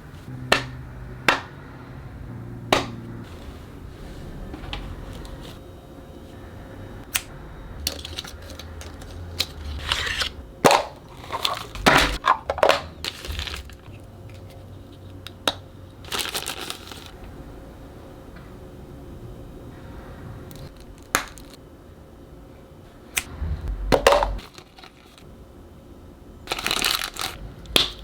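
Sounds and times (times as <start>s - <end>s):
toy packaging being opened: 7.9s - 13.8s, 16.1s - 17.2s, 26.5s - 27.4s
plastic and cardboard rustling: 7.9s - 15.0s, 16.0s - 17.2s.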